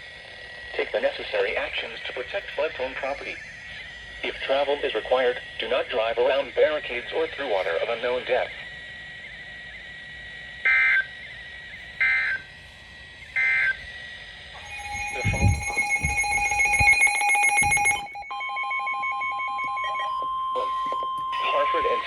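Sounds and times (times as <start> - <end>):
screechy digital data bursts: 0.5 - 18.3
pulsing electronic tones: 6.6 - 22.0
low thumps: 14.6 - 18.2
steady alert tone: 14.6 - 18.6.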